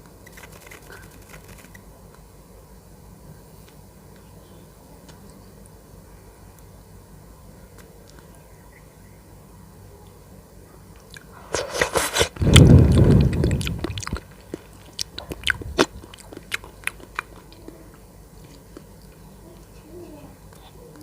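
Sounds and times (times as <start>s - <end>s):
wet mouth clicks: 11.1s - 17.8s
wet crackling mouth sounds: 11.1s - 19.2s
loud chewing: 11.1s - 19.8s.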